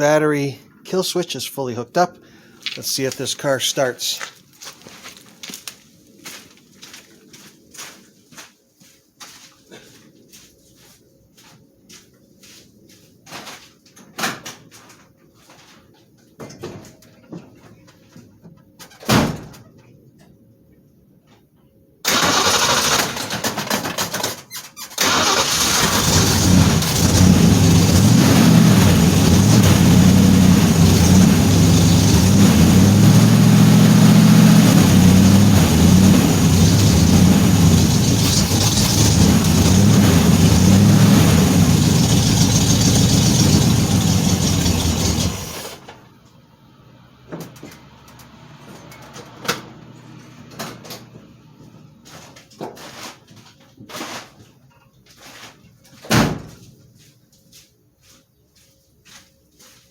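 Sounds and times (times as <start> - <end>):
starter motor cranking: 22.1 - 23.4, 25.0 - 45.7
car engine running: 25.5 - 45.7.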